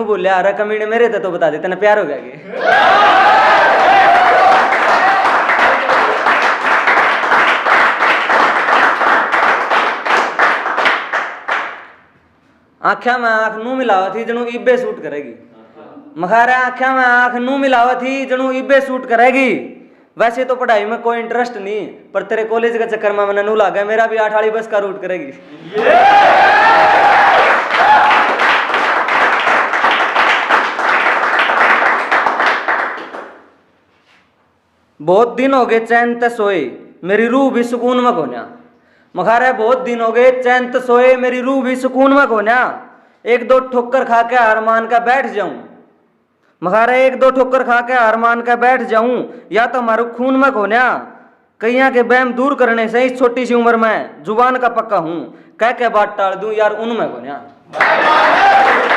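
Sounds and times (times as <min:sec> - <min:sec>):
audience applauding: 0:02.7 - 0:11.8, 0:25.6 - 0:33.4, 0:57.7 - 0:58.9.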